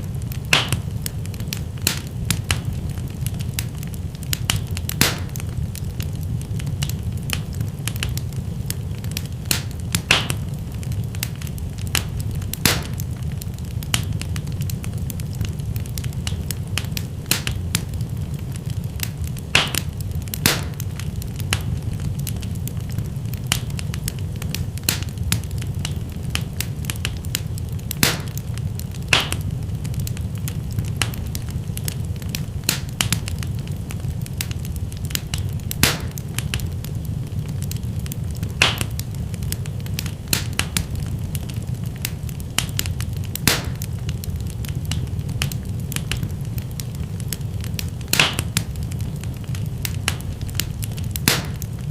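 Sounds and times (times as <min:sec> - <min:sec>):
fire crackling and popping: 0:00.0 - 0:51.9
low rumble of flames: 0:00.0 - 0:51.9.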